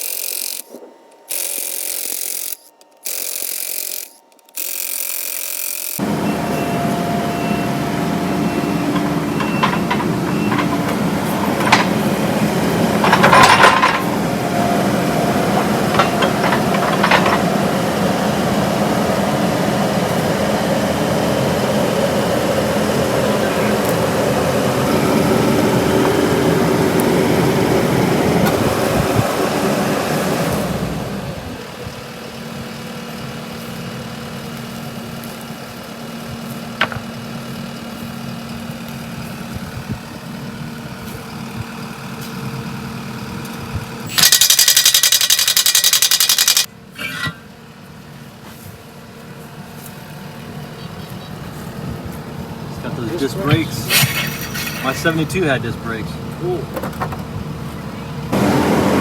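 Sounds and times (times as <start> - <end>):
vehicle engine running: 6.0 - 46.9, 47.5 - 59.0
metallic clanks: 8.9 - 12.1, 13.0 - 14.2, 15.6 - 17.5, 53.9 - 55.1.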